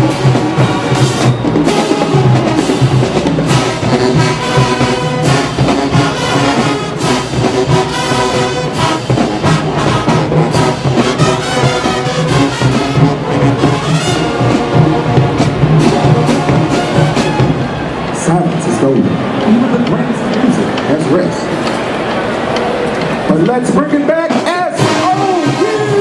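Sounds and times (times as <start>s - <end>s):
brass section loud chords: 0.0s - 21.6s, 23.3s - 26.0s
pounding drumline: 0.0s - 26.0s.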